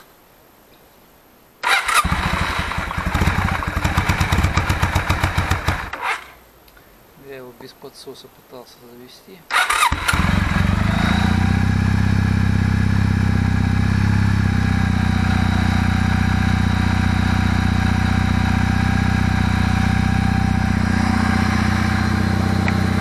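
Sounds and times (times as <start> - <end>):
motorcycle engine idling: 1.7 - 6.0, 9.8 - 23.0.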